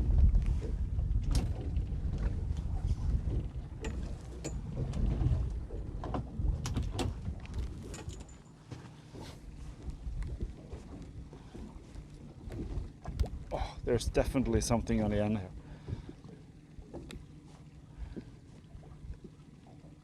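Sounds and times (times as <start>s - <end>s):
wind rumble: 0.0s - 8.0s
knocks and clicks on a boat: 0.0s - 13.6s, 14.3s - 20.0s
water around a boat: 0.0s - 20.0s.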